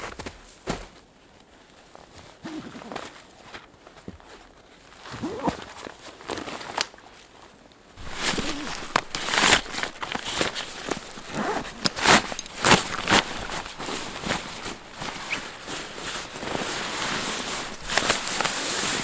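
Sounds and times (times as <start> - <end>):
footsteps crunching through snow: 8.0 - 19.0.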